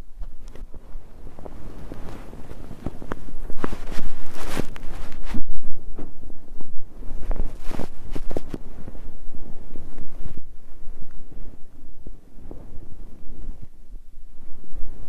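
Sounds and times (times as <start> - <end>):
bedding fabric rustling: 0.0 - 15.0.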